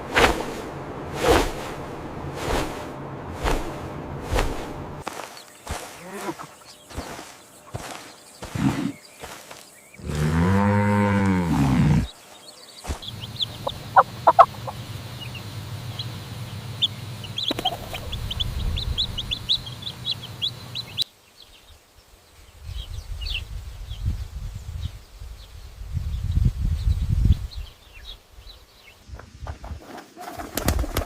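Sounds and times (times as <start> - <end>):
low rumble: 0.0 - 5.1
chickens clucking: 12.8 - 21.0
high chirps: 12.8 - 21.0.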